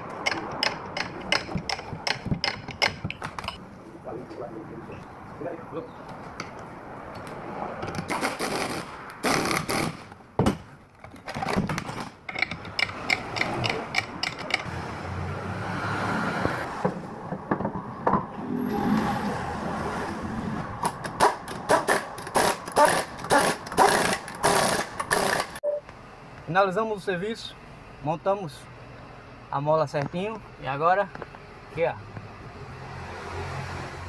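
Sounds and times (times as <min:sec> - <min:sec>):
hand tools clicking on metal: 0:00.1 - 0:03.6, 0:12.3 - 0:14.7.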